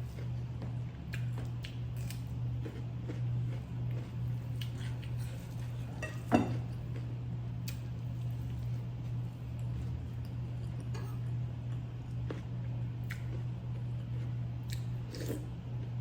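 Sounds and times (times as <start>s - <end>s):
steady low hum: 0.0s - 16.0s
utensils clinking on dishes: 5.8s - 6.7s.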